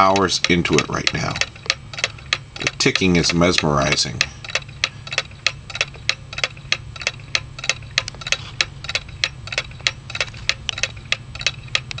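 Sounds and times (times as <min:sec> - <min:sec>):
clock ticking: 0:00.0 - 0:12.0.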